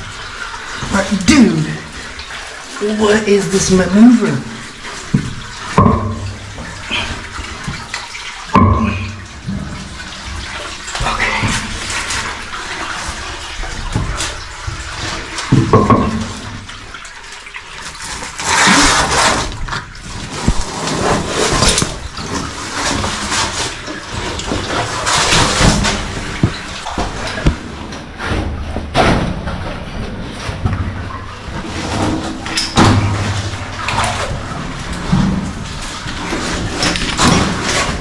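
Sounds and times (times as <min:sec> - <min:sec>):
water splashing and sloshing: 0:00.0 - 0:38.0
scrapes and knocks on rock: 0:18.2 - 0:29.5.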